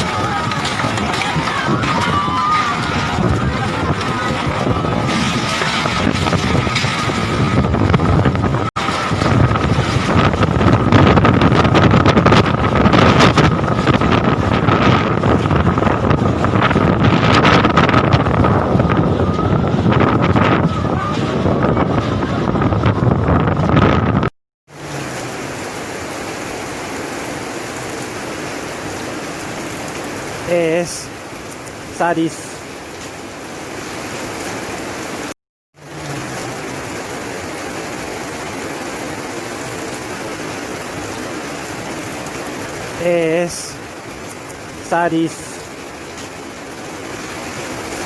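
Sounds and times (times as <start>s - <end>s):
hailstones pelting down: 0.0s - 7.5s, 8.8s - 10.8s
hail and rain falling: 0.0s - 8.2s, 8.8s - 15.4s, 24.7s - 48.0s
wind roaring: 0.0s - 48.0s.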